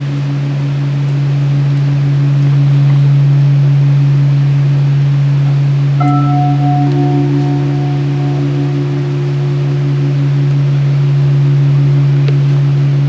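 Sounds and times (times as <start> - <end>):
bell-like ringing note: 6.0 - 12.2
low drone: 6.0 - 13.0.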